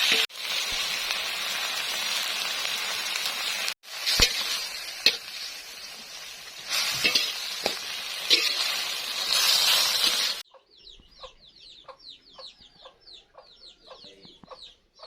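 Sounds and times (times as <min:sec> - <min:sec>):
food sizzling in a frying pan: 0:00.0 - 0:10.4
chickens calling and clucking: 0:10.3 - 0:15.0.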